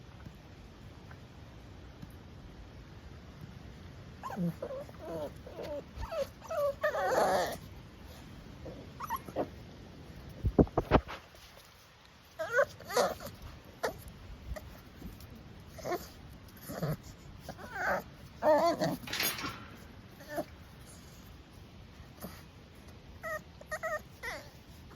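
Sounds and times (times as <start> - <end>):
puppy whimpering: 4.2 - 9.6, 12.3 - 21.4, 22.1 - 24.9.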